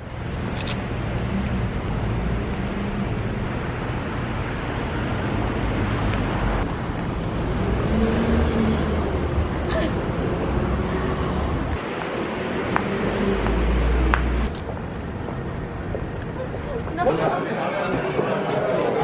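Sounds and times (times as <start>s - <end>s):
vehicle rumble: 0.0s - 19.0s.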